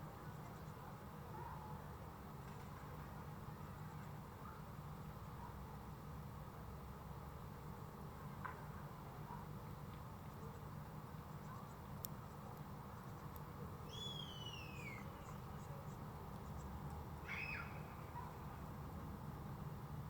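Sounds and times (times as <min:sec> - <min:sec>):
bird calling: 0:13.9 - 0:15.4, 0:17.2 - 0:18.1.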